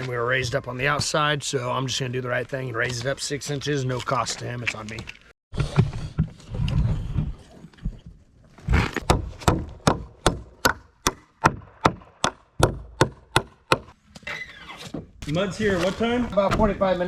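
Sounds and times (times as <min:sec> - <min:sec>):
hammer driving nails into wood: 0:09.0 - 0:13.9.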